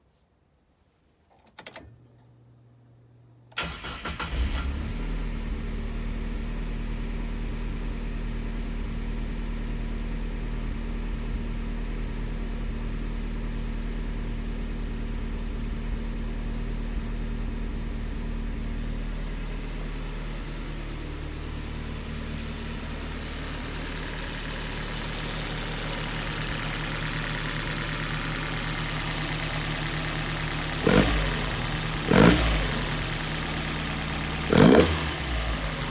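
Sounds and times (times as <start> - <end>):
car engine starting and idling: 3.5 - 35.9
engine revving blips: 30.8 - 33.2, 34.5 - 35.9.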